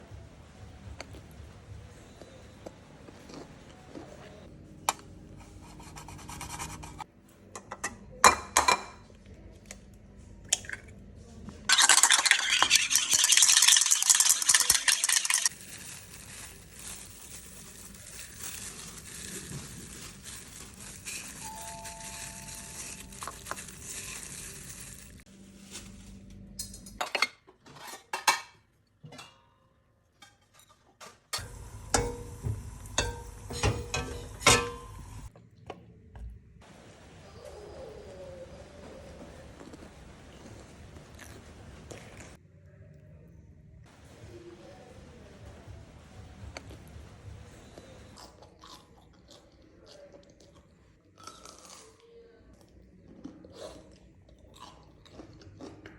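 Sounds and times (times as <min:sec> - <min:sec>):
cutlery clinking on dishes: 0:30.2 - 0:35.3.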